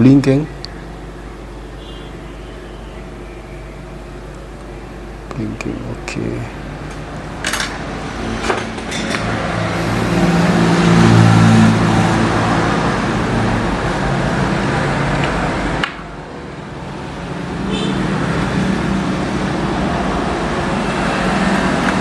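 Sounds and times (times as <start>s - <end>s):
passing vehicle engine: 7.8s - 22.0s.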